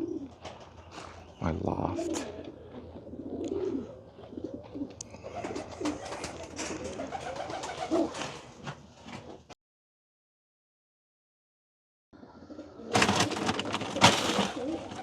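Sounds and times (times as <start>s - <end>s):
pigeons cooing: 0.0s - 8.4s, 12.2s - 15.0s.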